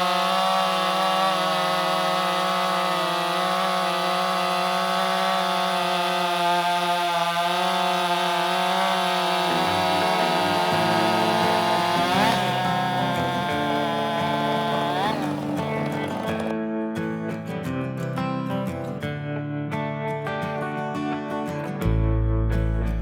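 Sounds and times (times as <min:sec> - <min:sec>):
chainsaw running at high revs: 0:00.0 - 0:16.5
music: 0:09.5 - 0:10.8, 0:15.2 - 0:23.0.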